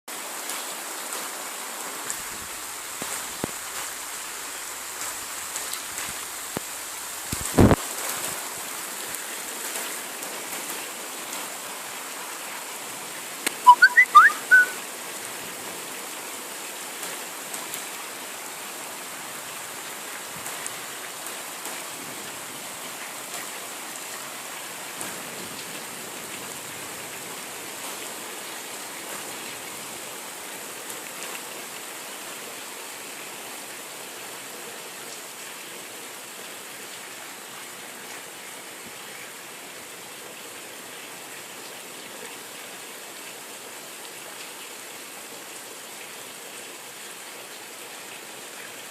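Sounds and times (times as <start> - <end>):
rain falling steadily: 0.0 - 48.9
rising whistled chirps: 13.6 - 14.8.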